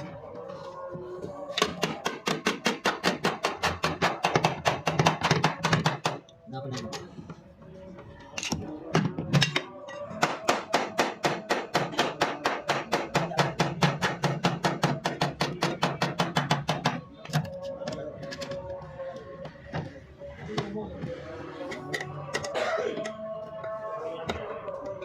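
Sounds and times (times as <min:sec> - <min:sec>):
background music: 0:00.0 - 0:25.0
hammer tapping on sheet metal: 0:01.6 - 0:06.2.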